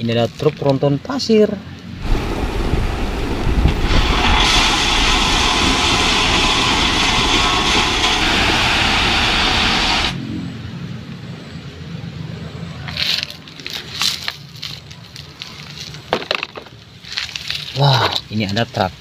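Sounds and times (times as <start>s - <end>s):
low hum: 1.8s - 12.6s
truck engine: 1.9s - 16.2s.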